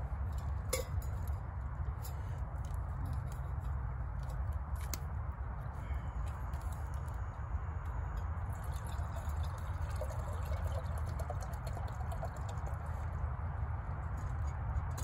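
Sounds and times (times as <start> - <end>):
water pouring into pot: 8.6 - 12.8.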